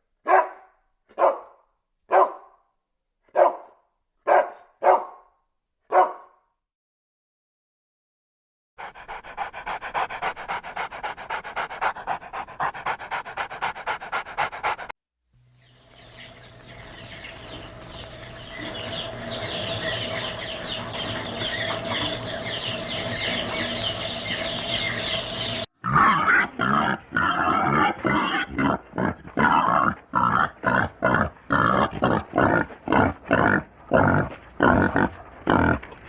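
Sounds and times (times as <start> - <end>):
dog panting: 8.8 - 15.0.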